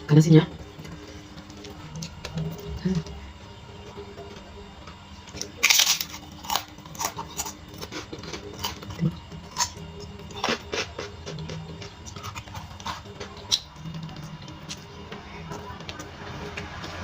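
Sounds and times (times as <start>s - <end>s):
crunching and chewing fried fish: 5.3s - 14.9s.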